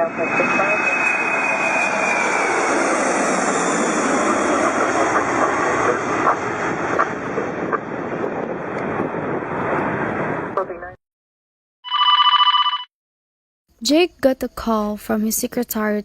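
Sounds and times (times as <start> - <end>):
jet engines running: 0.0 - 10.7.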